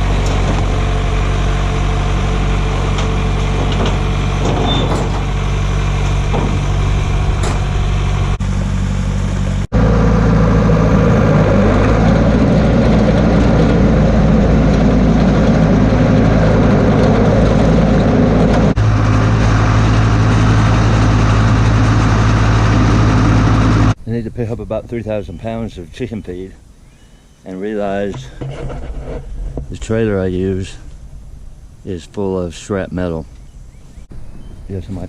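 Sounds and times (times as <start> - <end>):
vehicle engine running: 0.0 - 24.0.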